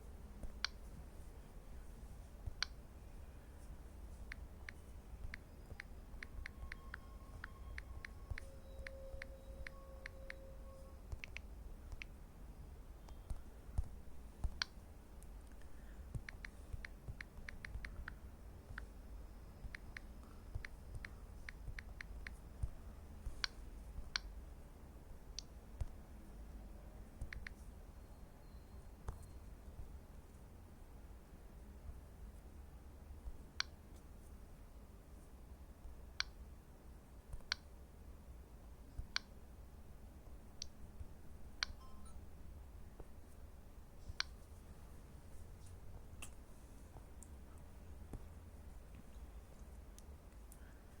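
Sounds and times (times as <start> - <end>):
low steady hum: 0.0 - 51.0
tablet tapping clicks: 0.4 - 0.9, 2.4 - 2.8, 4.2 - 12.2, 13.0 - 18.9, 19.6 - 24.3, 27.2 - 27.6, 37.3 - 37.7, 40.6 - 42.3.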